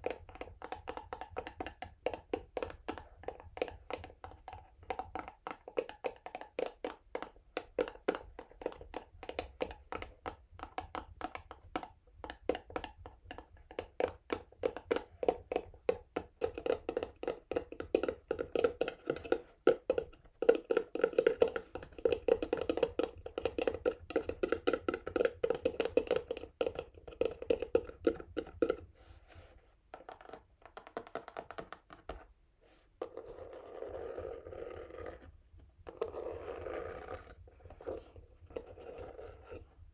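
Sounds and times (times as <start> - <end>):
fingernails scratching cardboard: 35.9 - 38.1.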